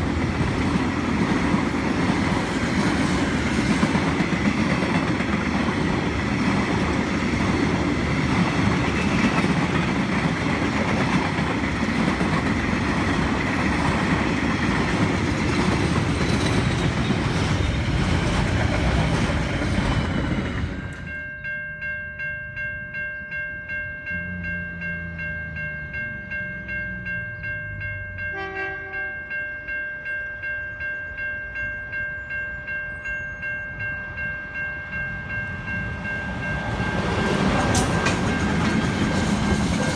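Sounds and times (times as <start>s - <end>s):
train wheels rumbling on rail: 0.0s - 21.2s, 34.1s - 39.9s.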